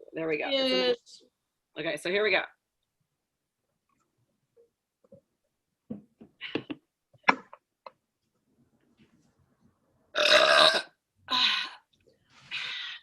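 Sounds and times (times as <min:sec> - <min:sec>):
woman burping: 0:10.2 - 0:11.8.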